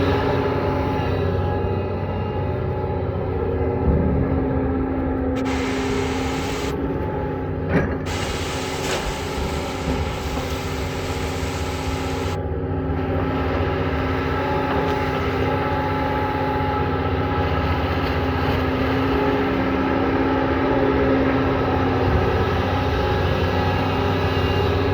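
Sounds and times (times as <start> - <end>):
excavator diesel engine running: 5.3 - 18.0.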